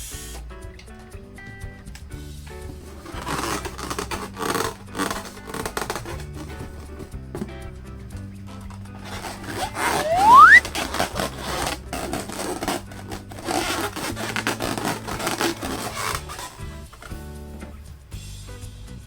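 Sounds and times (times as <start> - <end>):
background music: 0.0 - 19.0
balloon being rubbed and squeezed: 2.7 - 7.1, 8.9 - 16.6
balloon squeak rising in pitch: 9.2 - 11.0.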